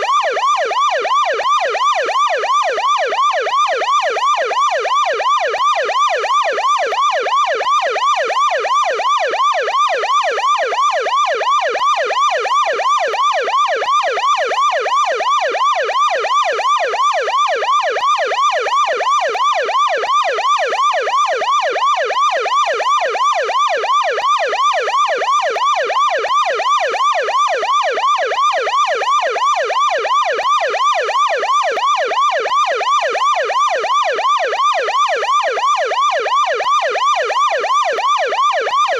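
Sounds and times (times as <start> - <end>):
police siren yelping: 0.0 - 38.9.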